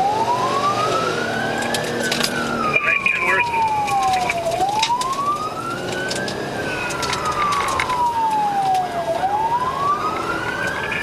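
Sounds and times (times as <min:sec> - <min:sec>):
moving vehicle noise: 0:00.0 - 0:11.0
police siren wailing: 0:00.0 - 0:11.0
scattered clicks: 0:01.6 - 0:08.9.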